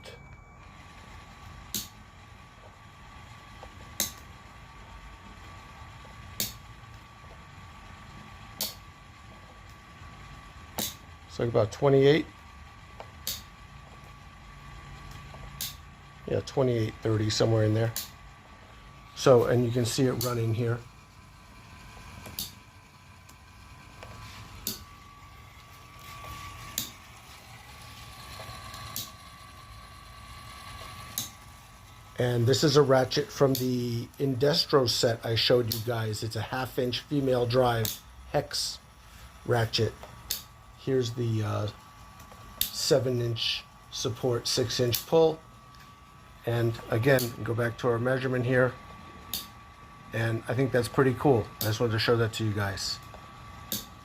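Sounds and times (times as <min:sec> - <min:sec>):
faint steady motor whine: 0:00.0 - 0:54.0
ratchet pawl clicking: 0:00.6 - 0:54.0
ratchet clicking: 0:01.7 - 0:02.0, 0:03.6 - 0:04.3, 0:06.0 - 0:07.4, 0:08.5 - 0:09.8, 0:10.7 - 0:11.1, 0:13.0 - 0:14.0, 0:15.0 - 0:15.9, 0:22.1 - 0:29.8, 0:30.5 - 0:31.5, 0:35.6 - 0:38.6, 0:39.5 - 0:40.6, 0:41.4 - 0:45.8, 0:49.3 - 0:49.6, 0:53.7 - 0:54.0.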